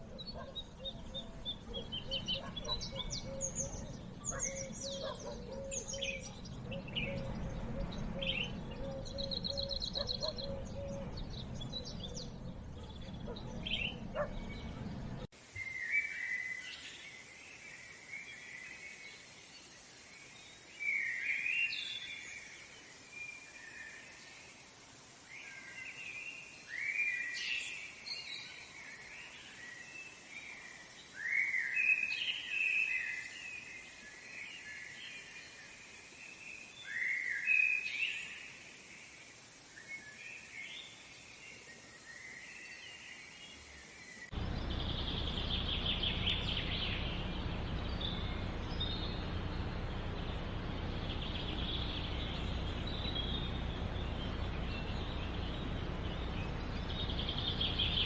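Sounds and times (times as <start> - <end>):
birds calling: 0.0 - 15.3, 44.2 - 58.0
steady background noise: 0.0 - 15.3.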